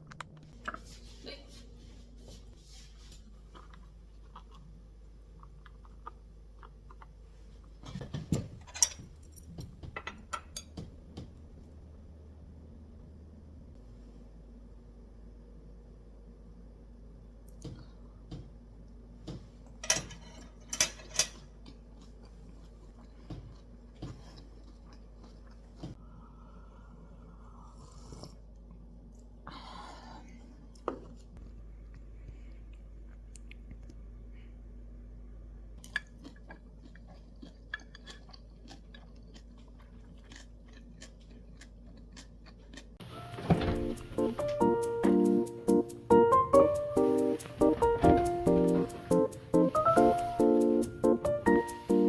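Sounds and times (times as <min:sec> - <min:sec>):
person chewing crunchy food: 0:03.2 - 0:07.8, 0:21.4 - 0:26.0, 0:35.8 - 0:43.0
guitar music: 0:43.1 - 0:52.0.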